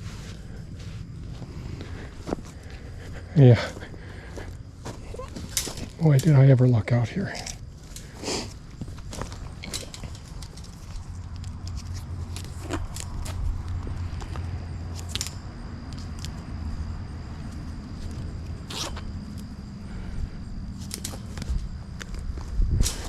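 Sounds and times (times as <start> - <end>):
steady low rumble: 0.0 - 23.0
cable ties zipping: 18.6 - 19.0.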